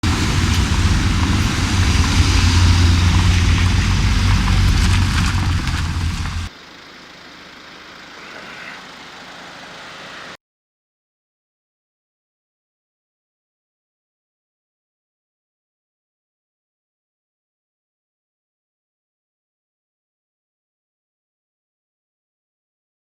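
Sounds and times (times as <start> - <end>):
engine running low rumble: 0.0 - 10.3.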